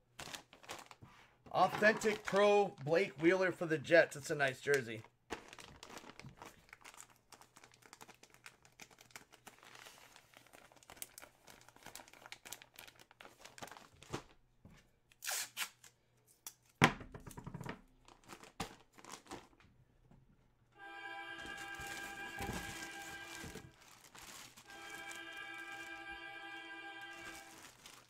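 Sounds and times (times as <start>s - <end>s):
plastic packaging crinkling and tearing: 0.0s - 3.6s, 4.6s - 14.4s, 18.0s - 19.6s, 21.4s - 26.1s, 27.0s - 28.0s.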